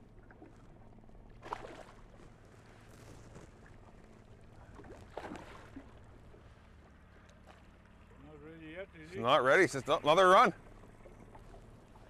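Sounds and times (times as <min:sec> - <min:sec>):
faint water splashing: 0:00.0 - 0:12.0
low steady hum: 0:00.0 - 0:12.0
brief splashes: 0:01.4 - 0:03.8, 0:04.5 - 0:06.6.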